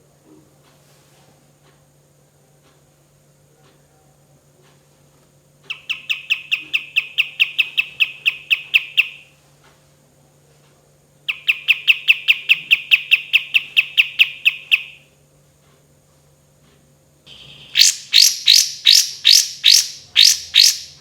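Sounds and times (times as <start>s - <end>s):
faint low hum: 0.0s - 21.0s
songbird calling sharp notes: 5.7s - 9.3s, 11.3s - 15.1s, 17.3s - 21.0s.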